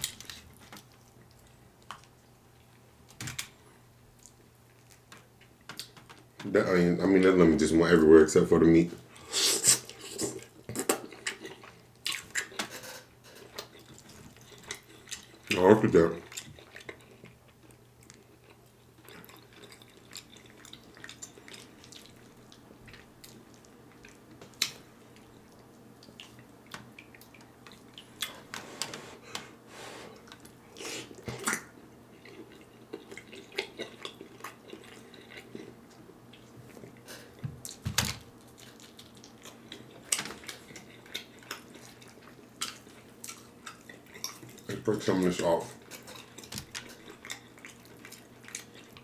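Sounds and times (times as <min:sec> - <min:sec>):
person chewing: 0:09.2 - 0:15.6, 0:16.2 - 0:37.8, 0:38.4 - 0:44.8, 0:45.8 - 0:49.0.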